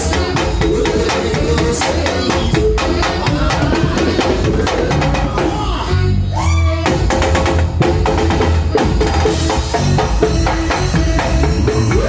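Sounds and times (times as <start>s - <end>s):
heavy bass line: 0.0s - 12.0s
live band playing: 0.0s - 12.0s
drum kit hits: 6.9s - 12.0s.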